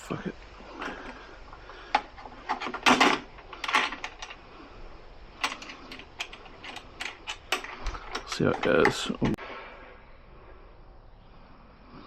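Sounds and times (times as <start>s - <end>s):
parts clattering: 0.4s - 9.4s
small metal parts clicking: 1.9s - 4.4s, 5.4s - 9.2s.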